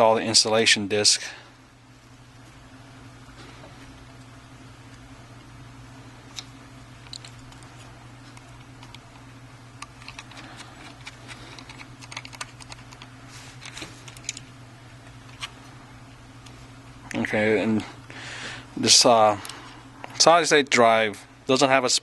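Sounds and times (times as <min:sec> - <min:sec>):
low steady hum: 0:00.0 - 0:22.0
small parts clicking and tapping: 0:06.3 - 0:07.7, 0:08.3 - 0:14.5.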